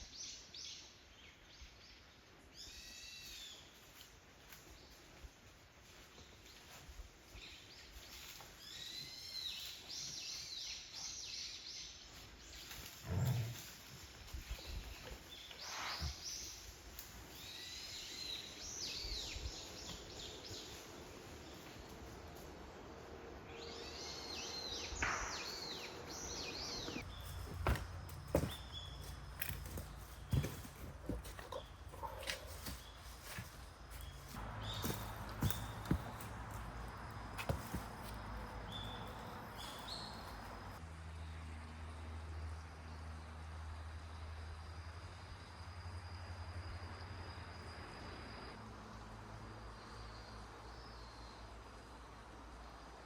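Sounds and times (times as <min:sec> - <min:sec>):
birds chirping: 0:22.9 - 0:40.8.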